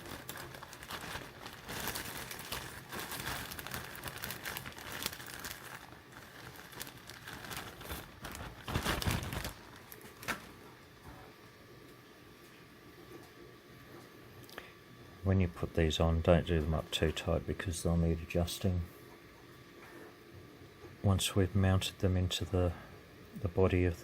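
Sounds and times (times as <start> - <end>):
small parts rustling and crinkling: 0.0 - 10.6.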